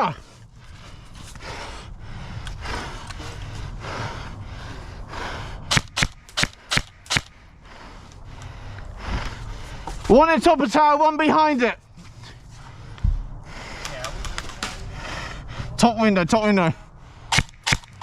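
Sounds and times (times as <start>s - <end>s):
airsoft gun shots: 5.7s - 7.4s, 17.3s - 18.0s.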